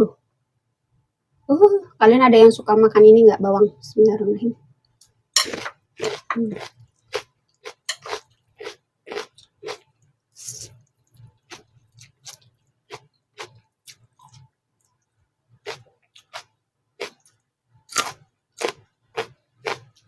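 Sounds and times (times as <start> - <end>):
crunchy chewing: 5.4 - 15.0, 15.6 - 20.0.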